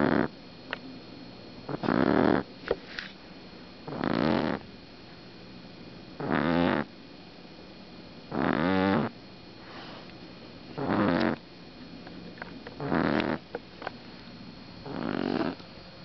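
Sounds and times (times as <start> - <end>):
puppy snoring: 0.0 - 0.4, 1.7 - 2.5, 3.8 - 4.7, 6.2 - 6.9, 8.3 - 10.0, 10.8 - 11.4, 12.8 - 13.6, 14.8 - 15.6.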